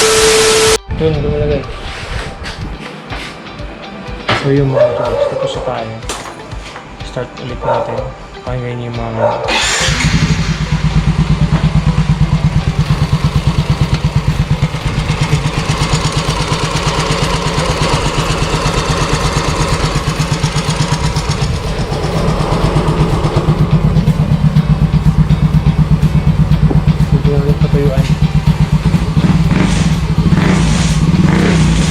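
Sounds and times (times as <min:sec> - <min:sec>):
scooter engine idling: 0:09.2 - 0:31.9.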